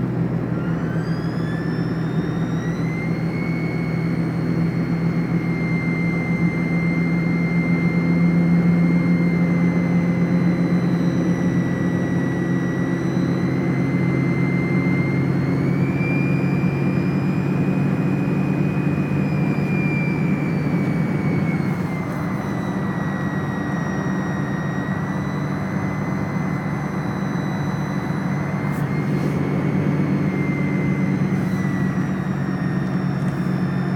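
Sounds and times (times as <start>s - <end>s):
diesel engine humming: 0.0s - 33.9s
thin high whistle: 0.6s - 9.5s, 11.2s - 33.9s.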